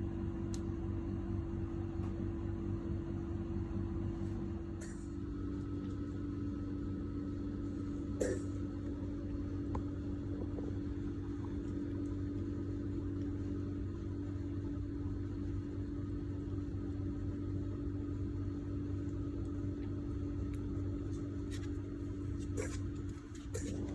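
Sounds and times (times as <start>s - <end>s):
low mechanical hum: 0.0s - 23.9s.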